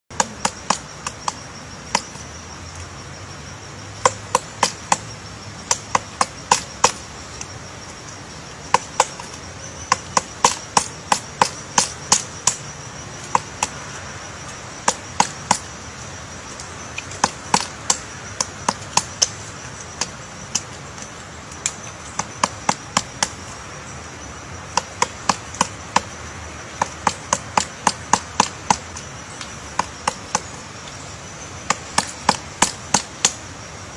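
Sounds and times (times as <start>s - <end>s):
woodpecker pecking at wood: 0.1s - 2.2s, 4.0s - 7.5s, 8.7s - 13.9s, 14.5s - 23.6s, 24.6s - 33.4s.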